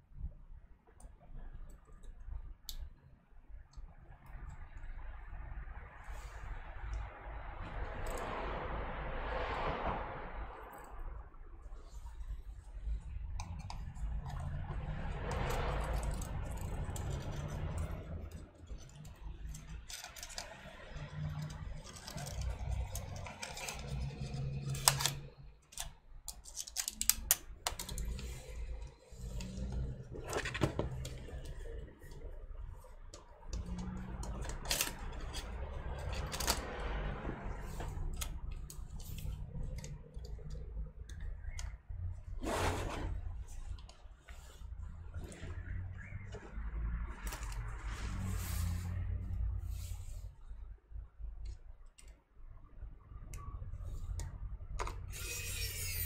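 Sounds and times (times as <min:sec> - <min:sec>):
small laptop parts clicking and rattling: 0:12.0 - 0:42.3, 0:47.1 - 0:47.8.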